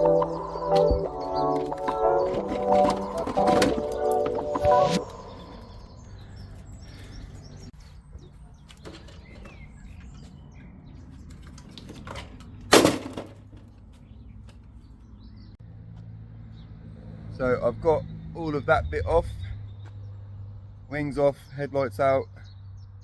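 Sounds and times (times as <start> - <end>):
steady low background: 0.0 - 7.8.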